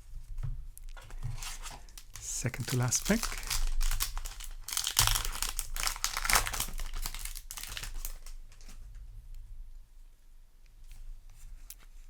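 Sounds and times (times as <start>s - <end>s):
foil wrapper crinkling: 1.0s - 8.8s.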